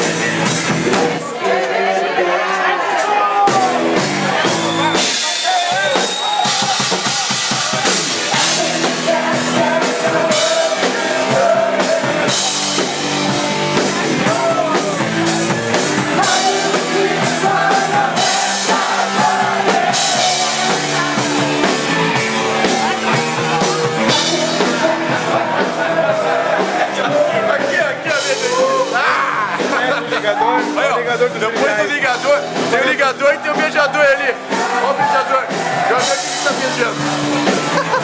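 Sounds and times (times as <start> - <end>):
electric guitars and bass: 0.0 - 1.3, 3.5 - 5.2, 6.4 - 34.8, 35.5 - 38.0
drum kit cymbal and snare hits: 2.5 - 28.9
person singing: 7.0 - 15.1, 16.0 - 30.0.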